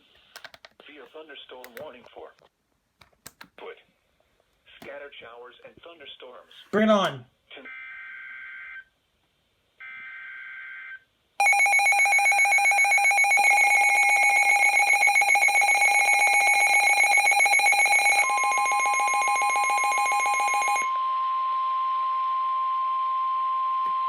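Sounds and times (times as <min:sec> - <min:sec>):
steady warning tone: 0:11.4 - 0:20.9.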